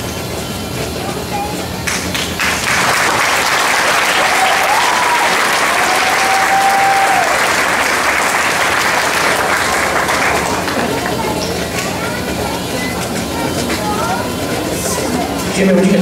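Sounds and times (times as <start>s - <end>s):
audience applauding: 1.8s - 13.0s.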